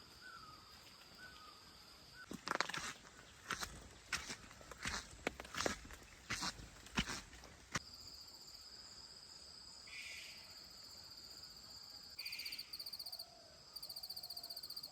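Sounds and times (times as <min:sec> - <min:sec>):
insects trilling: 0:09.7 - 0:14.9
loud fast-pulsing insect trill: 0:12.2 - 0:13.2.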